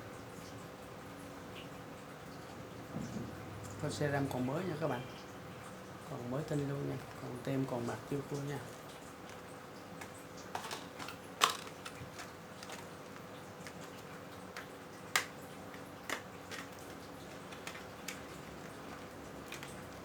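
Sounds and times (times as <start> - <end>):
plastic packaging crackling: 6.4 - 20.0.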